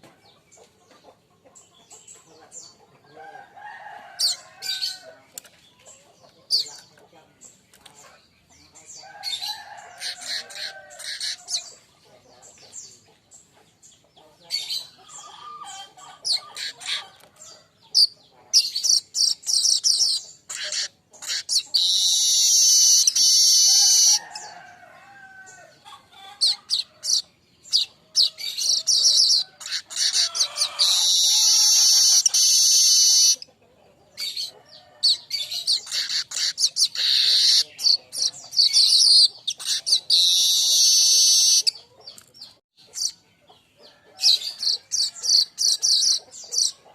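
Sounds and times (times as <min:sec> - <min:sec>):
weaver bird chattering: 0:04.2 - 0:24.6, 0:26.2 - 0:46.9
rapid high bird trills: 0:18.0 - 0:24.5, 0:26.4 - 0:33.4, 0:34.2 - 0:41.8.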